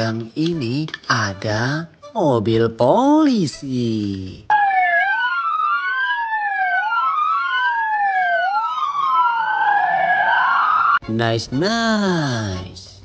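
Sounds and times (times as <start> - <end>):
electronic police siren wailing: 4.5 - 11.0.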